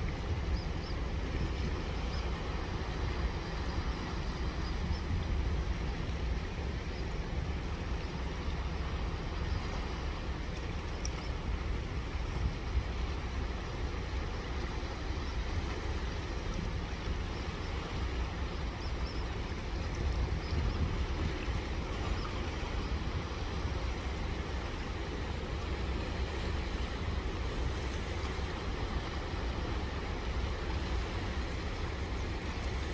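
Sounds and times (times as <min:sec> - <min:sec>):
wind: 0:00.0 - 0:32.9.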